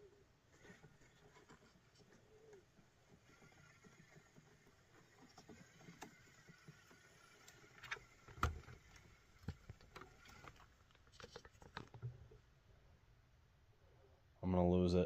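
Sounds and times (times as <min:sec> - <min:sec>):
rc crawler clicks and knocks: 0:00.5 - 0:12.2.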